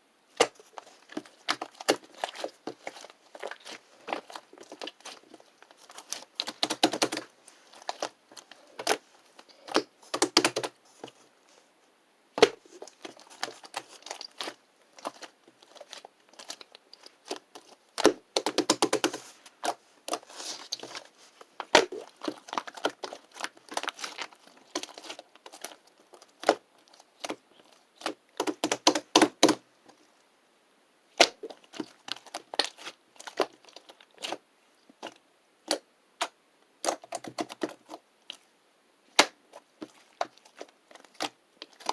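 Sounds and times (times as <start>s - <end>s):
slime squishing with clicking pops: 12.4s - 20.2s, 35.0s - 38.4s.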